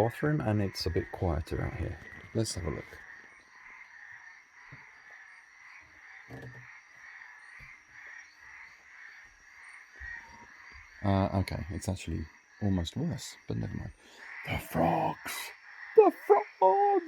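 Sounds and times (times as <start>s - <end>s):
faint high insect-like whine: 0.0s - 17.0s
frog chorus trilling: 0.0s - 17.0s.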